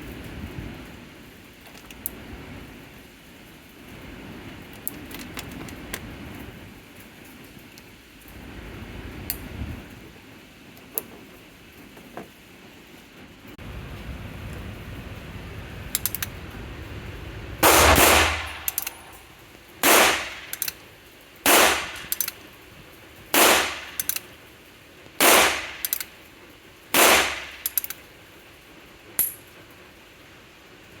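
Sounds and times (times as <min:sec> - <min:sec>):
rifle shots with echo: 0:17.6 - 0:20.7, 0:21.4 - 0:22.2, 0:23.3 - 0:24.2, 0:25.2 - 0:26.0, 0:27.0 - 0:27.7.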